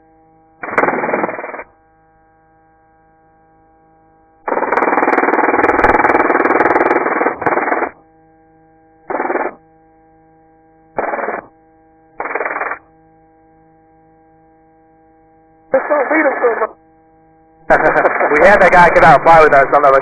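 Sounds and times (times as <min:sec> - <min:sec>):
steady electrical hum: 0:00.0 - 0:20.0
radio-filtered rotor and wind noise: 0:12.2 - 0:12.8, 0:15.7 - 0:16.8, 0:17.7 - 0:20.0.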